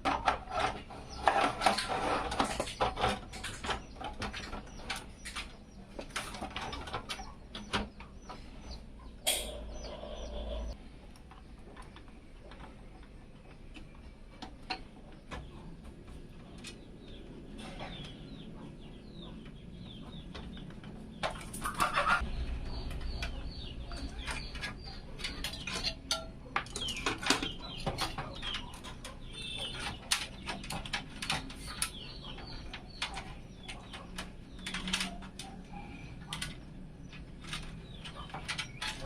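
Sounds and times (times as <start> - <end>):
birds chirping: 0.0 - 39.0
chicken clucking: 0.1 - 10.8, 16.4 - 37.2
clicks and light clatter: 11.1 - 39.0.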